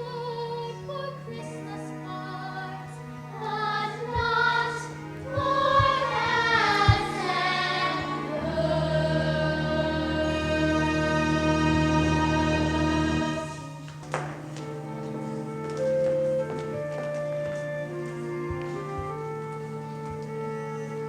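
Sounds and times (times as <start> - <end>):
young performers singing: 0.0 - 13.6
musical accompaniment: 0.0 - 21.0
dull thumps: 4.1 - 8.1.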